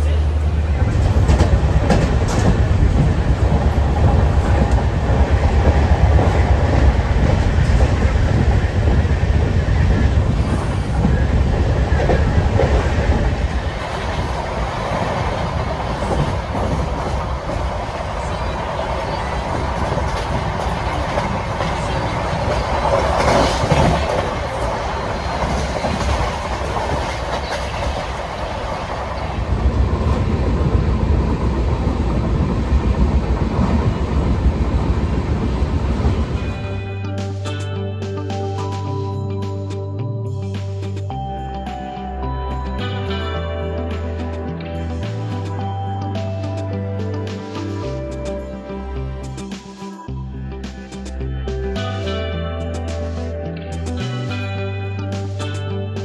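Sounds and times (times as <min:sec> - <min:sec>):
train carriages rolling and rattling: 0:00.0 - 0:36.9
heavy low train rumble: 0:00.0 - 0:37.2.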